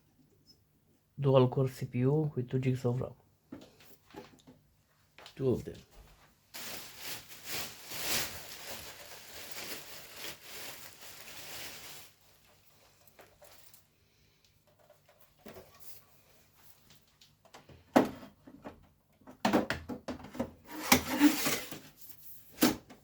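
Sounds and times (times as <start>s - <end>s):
rustling and scraping hardware: 14.6s - 17.1s, 20.3s - 23.0s.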